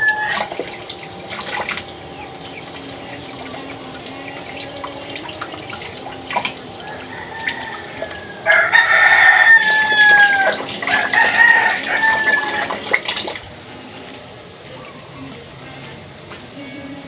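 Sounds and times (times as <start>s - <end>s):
rooster crowing: 0.0s - 0.9s, 6.6s - 13.0s
water running from a tap: 0.0s - 14.3s.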